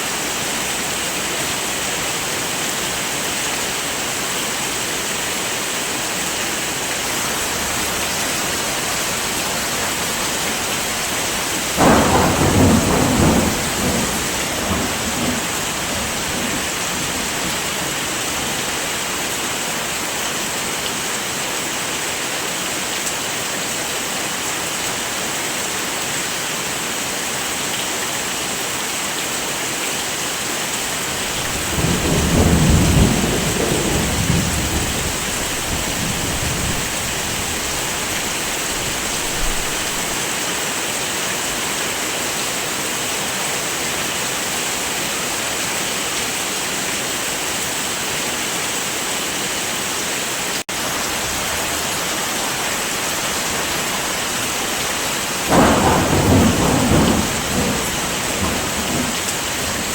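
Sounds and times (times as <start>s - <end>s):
heavy rain: 0.0s - 59.9s
low thunder rumbling: 7.2s - 18.8s, 31.1s - 40.2s, 53.6s - 59.9s.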